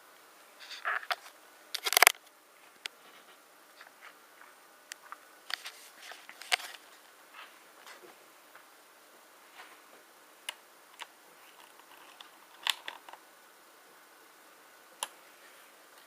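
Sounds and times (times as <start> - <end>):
laptop parts clicking: 1.8 - 2.2, 11.0 - 13.2.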